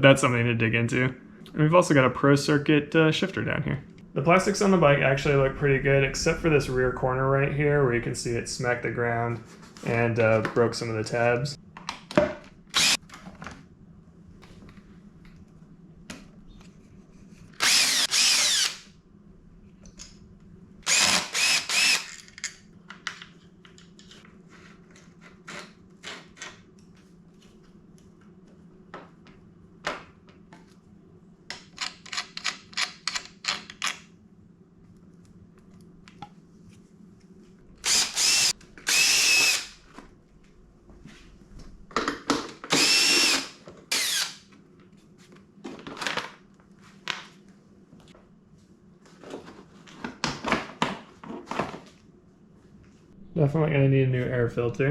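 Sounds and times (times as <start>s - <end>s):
cordless power drill spinning: 12.7s - 13.0s, 17.6s - 18.9s, 20.9s - 22.2s, 37.8s - 39.8s, 42.7s - 44.4s.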